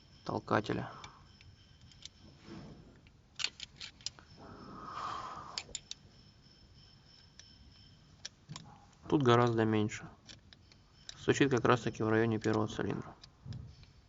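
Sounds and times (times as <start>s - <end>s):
metallic clicks of valve tappets: 1.0s - 2.4s, 5.5s - 6.2s, 7.0s - 14.0s.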